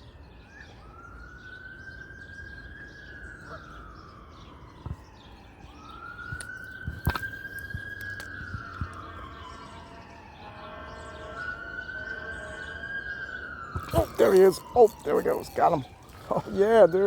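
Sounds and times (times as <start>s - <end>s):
siren wailing: 0.5s - 17.0s
sharp clicks: 6.2s - 9.2s.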